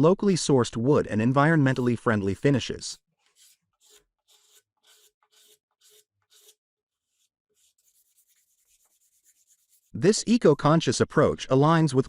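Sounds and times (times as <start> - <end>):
faint scratchy strokes: 1.6 - 2.7, 3.3 - 10.0.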